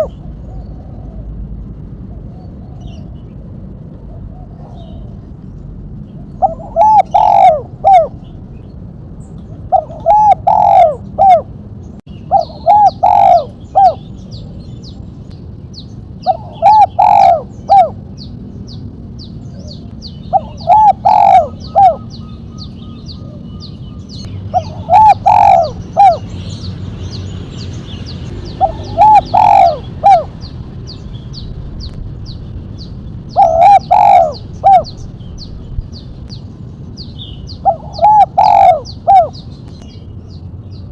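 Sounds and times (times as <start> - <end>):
dove cooing: 0.0 - 1.4, 4.0 - 5.3, 6.2 - 8.2, 9.7 - 11.5, 12.3 - 14.1, 16.2 - 18.0, 19.6 - 26.4, 28.3 - 30.5, 33.3 - 35.1, 37.5 - 39.4
small bird chirping: 4.6 - 40.9.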